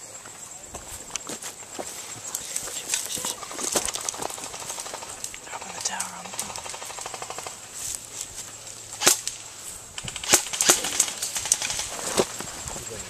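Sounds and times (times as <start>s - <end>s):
airsoft guns firing: 9.0s - 9.4s, 10.0s - 12.2s.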